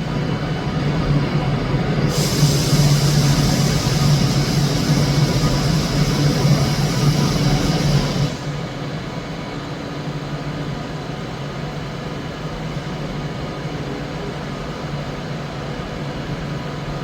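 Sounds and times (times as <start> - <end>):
electric train humming: 0.0 - 9.5.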